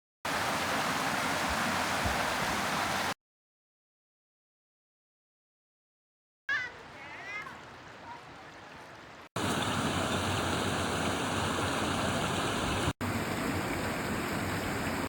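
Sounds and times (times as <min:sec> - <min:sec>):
brook babbling: 0:00.3 - 0:03.2, 0:06.5 - 0:15.0.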